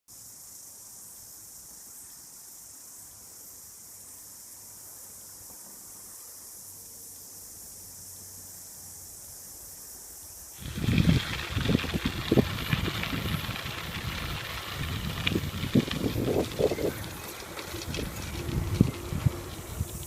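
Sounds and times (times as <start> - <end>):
insects chorus: 0.1 - 20.0.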